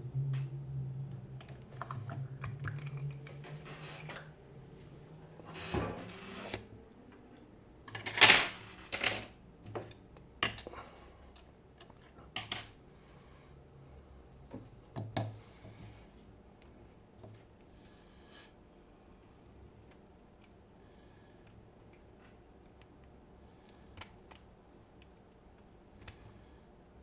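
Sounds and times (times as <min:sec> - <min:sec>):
metal parts clicking and clinking: 0:07.9 - 0:09.3.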